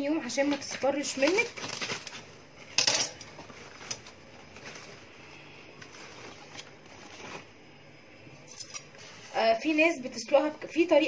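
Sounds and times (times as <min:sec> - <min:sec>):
rustling and scraping: 0:00.5 - 0:07.8.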